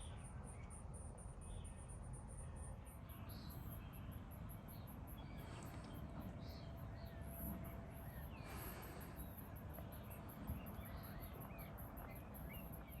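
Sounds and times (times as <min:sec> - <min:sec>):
birds chirping: 0:02.9 - 0:13.0
low wind rumble: 0:02.9 - 0:13.0.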